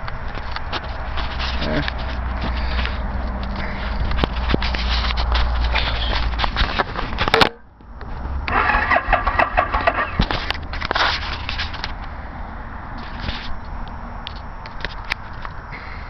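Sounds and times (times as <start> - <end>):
motorcycle starter cranking: 8.5 - 10.3.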